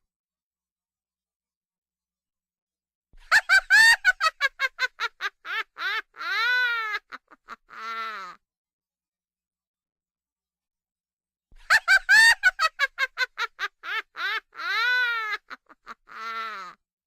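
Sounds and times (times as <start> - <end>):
witch cackling laugh: 3.2 - 8.4, 11.6 - 16.8.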